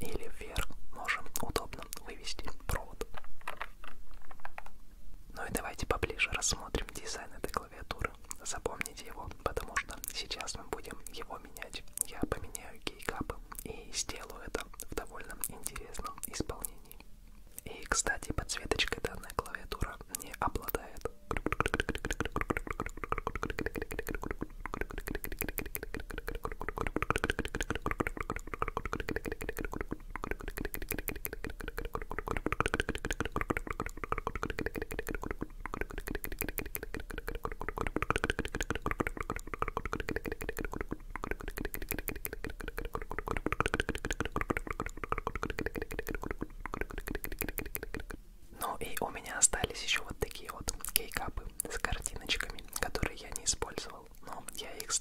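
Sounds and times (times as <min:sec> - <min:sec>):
plastic keyboard keycaps clicking: 0:03.0 - 0:04.8.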